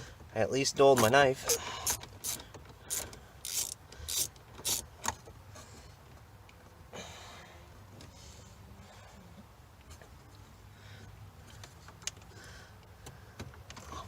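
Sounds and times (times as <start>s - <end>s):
plastic parts clicking and rattling: 1.0s - 5.2s.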